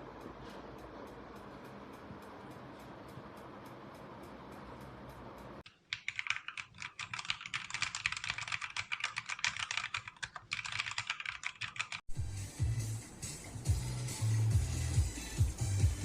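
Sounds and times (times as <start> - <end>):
mechanical keyboard typing: 5.7 - 12.1
music: 12.1 - 16.0.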